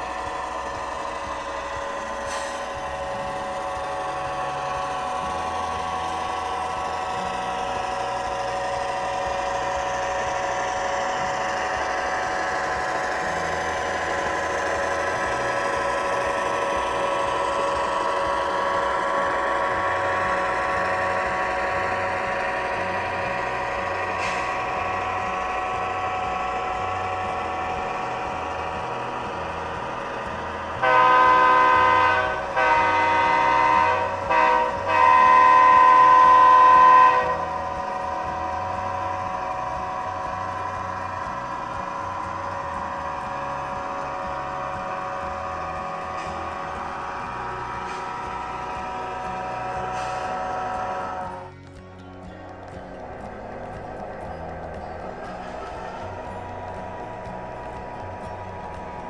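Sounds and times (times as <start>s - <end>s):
model diesel locomotive engine: 0.0s - 59.0s
multi-tone horn blast: 30.7s - 37.7s.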